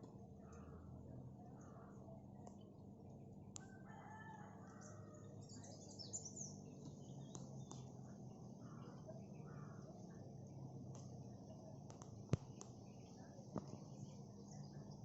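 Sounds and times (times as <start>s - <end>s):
small birds chirping: 0.0s - 15.0s
faint rooster crowing: 3.6s - 5.7s.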